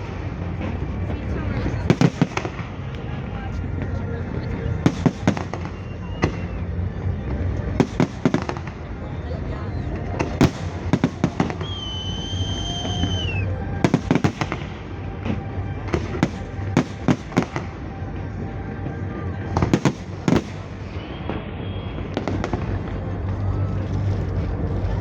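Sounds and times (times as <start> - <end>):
fireworks bangs and crackles: 0.0 - 25.0
steady rumble: 0.0 - 25.0
high firework whistle: 5.3 - 6.7, 11.4 - 14.5, 20.8 - 22.4.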